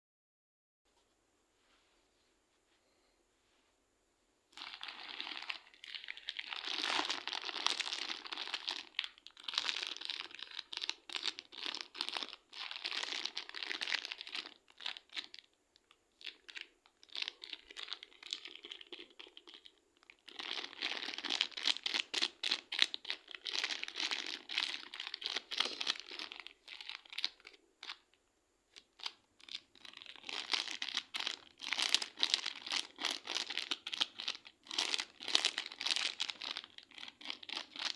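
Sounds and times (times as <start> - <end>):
slime crackling and popping: 4.6 - 15.5.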